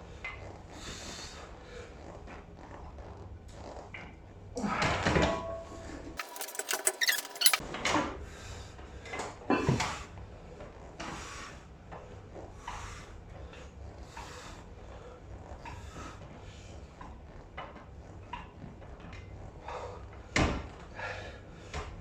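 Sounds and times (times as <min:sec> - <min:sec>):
gym machine clanking: 0:06.2 - 0:07.6.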